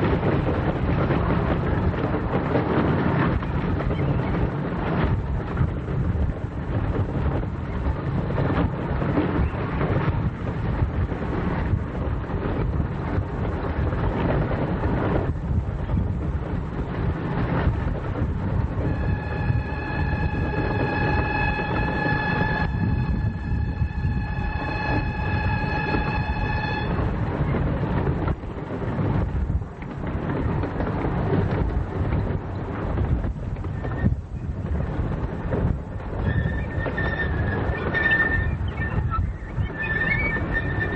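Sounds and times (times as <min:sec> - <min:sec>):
miniature train rumbling: 0:00.0 - 0:40.9
wind buffeting microphone: 0:00.0 - 0:40.9
steady pitched tone: 0:18.7 - 0:27.2.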